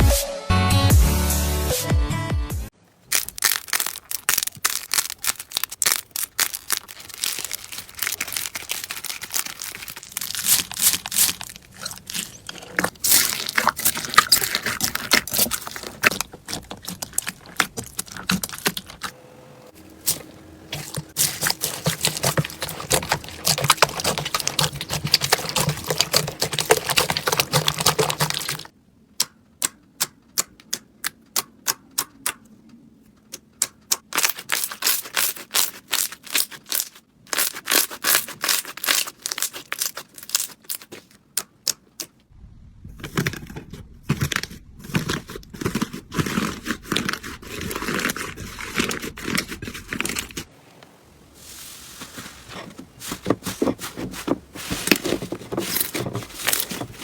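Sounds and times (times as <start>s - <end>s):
slime crackling and popping: 3.1s - 19.1s, 20.0s - 28.7s, 34.0s - 41.8s.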